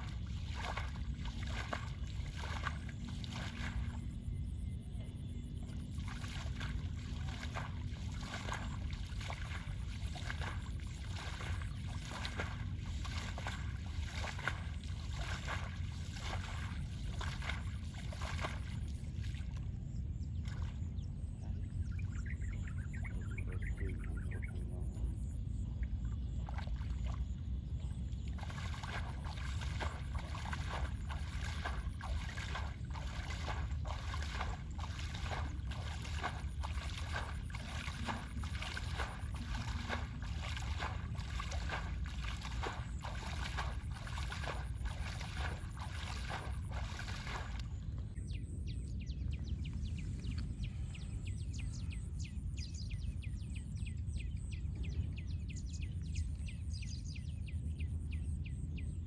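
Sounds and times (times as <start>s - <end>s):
water sloshing and splashing: 0.0s - 4.3s, 5.6s - 23.3s, 24.9s - 48.3s
low rumble: 0.0s - 59.0s.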